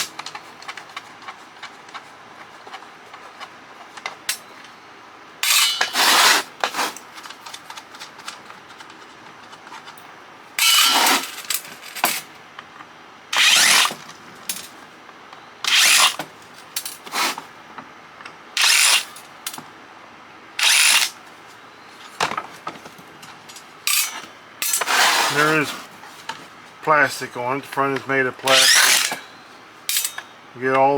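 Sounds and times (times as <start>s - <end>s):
power drill bursts: 5.4s - 6.5s, 10.6s - 11.6s, 13.4s - 14.0s, 15.7s - 16.2s, 18.6s - 19.2s, 20.6s - 21.2s, 23.9s - 25.7s, 28.4s - 30.2s.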